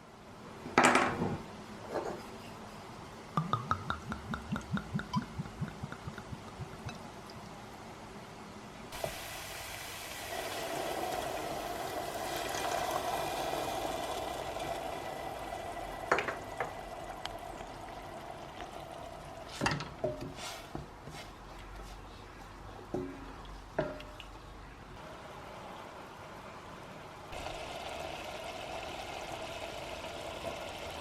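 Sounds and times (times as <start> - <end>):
utensil knocking on pan: 3.4 - 7.0
food sizzling in a pan: 8.9 - 19.6, 27.4 - 31.0.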